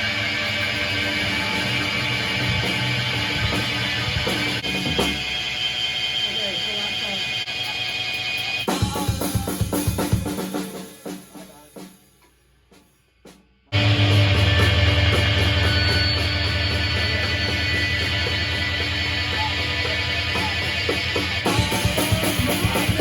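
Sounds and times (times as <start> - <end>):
rock band playing: 0.0 - 11.6, 13.7 - 23.0
drum kit hits: 8.7 - 11.6, 13.3 - 23.0.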